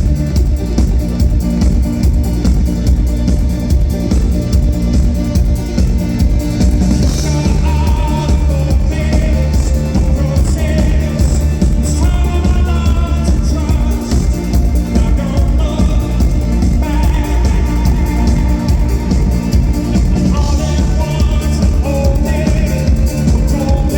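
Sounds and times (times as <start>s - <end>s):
heavy bass: 0.0s - 23.9s
live rock band playing: 0.0s - 23.9s
person singing: 7.2s - 23.9s.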